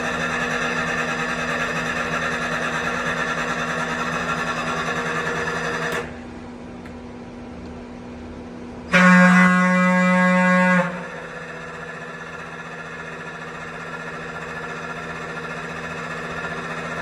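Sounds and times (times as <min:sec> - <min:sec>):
machine tool whine: 0:00.0 - 0:06.4, 0:08.8 - 0:17.0
machine hum: 0:00.0 - 0:17.0.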